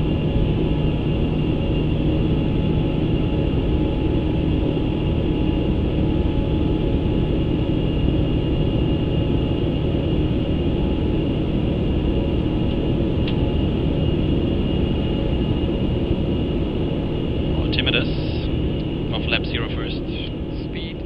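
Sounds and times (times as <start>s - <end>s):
jet engines droning: 0.0s - 21.0s
faint high whine: 13.3s - 21.0s.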